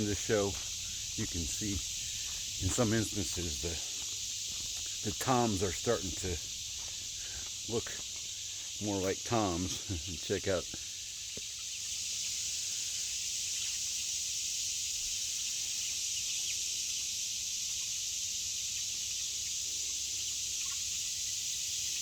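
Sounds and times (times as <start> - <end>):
insect chorus drone: 0.0 - 22.0
faint bird peeps: 18.7 - 22.0.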